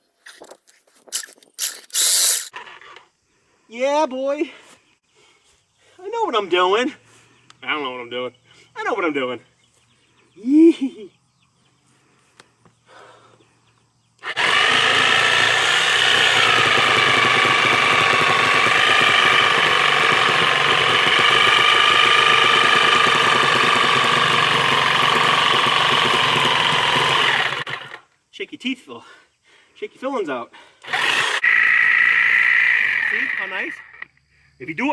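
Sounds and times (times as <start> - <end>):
power tool cutting tire: 1.2 - 2.5, 14.2 - 28.0, 30.8 - 33.6.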